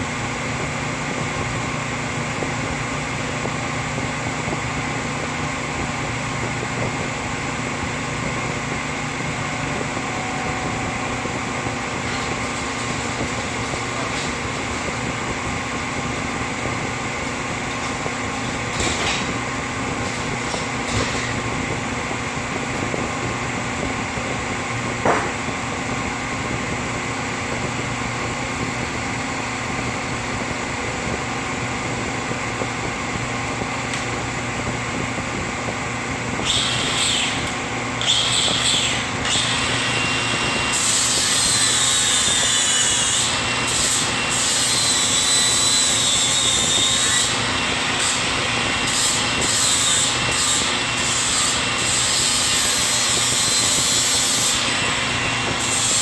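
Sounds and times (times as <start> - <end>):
steady machine hum: 0.0 - 56.0
angle grinder grinding metal: 36.4 - 56.0.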